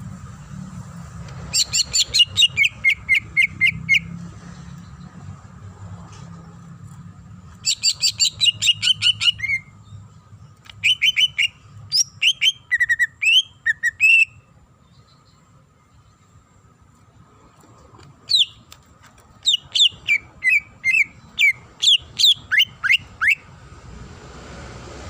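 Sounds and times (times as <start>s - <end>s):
bird singing: 1.5s - 5.4s, 7.6s - 16.7s, 18.2s - 18.7s, 19.3s - 23.5s.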